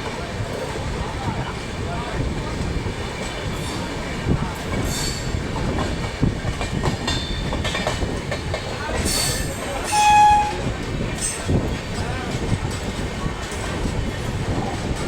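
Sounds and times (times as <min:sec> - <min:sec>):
train wheels rumbling on track: 0:00.0 - 0:15.0
train horn blast: 0:09.9 - 0:10.7.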